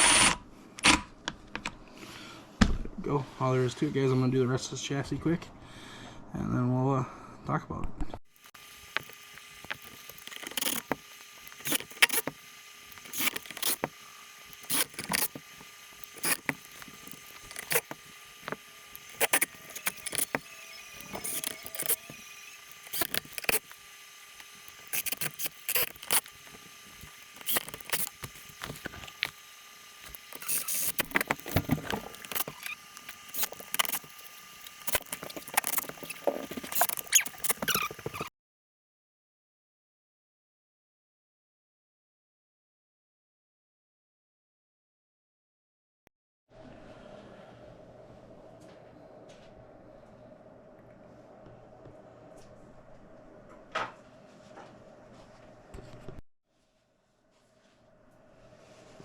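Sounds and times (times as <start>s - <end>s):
small metal screws clicking: 8.6s - 12.3s, 12.9s - 13.9s, 14.5s - 29.4s, 30.0s - 38.3s.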